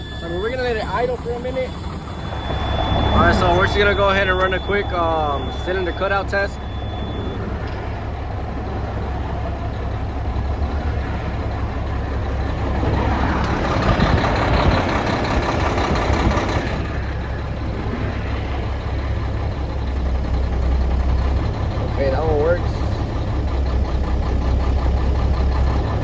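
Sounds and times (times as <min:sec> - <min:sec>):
diesel engine idling: 0:00.0 - 0:26.0.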